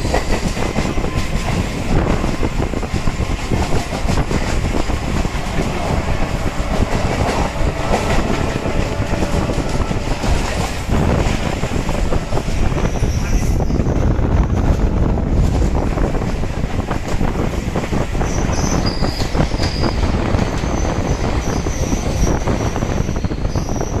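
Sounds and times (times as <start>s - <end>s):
train rumbling on rails: 0.0s - 24.0s
high wheel squeal: 18.2s - 24.0s.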